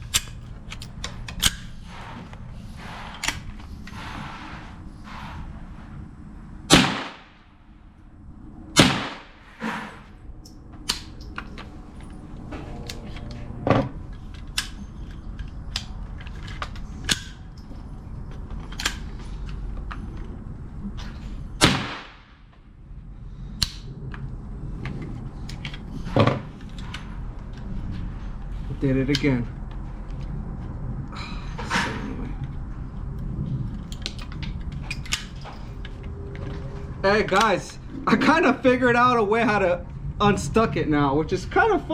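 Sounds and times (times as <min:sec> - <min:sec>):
gunshots ringing out: 0:06.7 - 0:07.4, 0:08.8 - 0:09.5, 0:21.6 - 0:22.4.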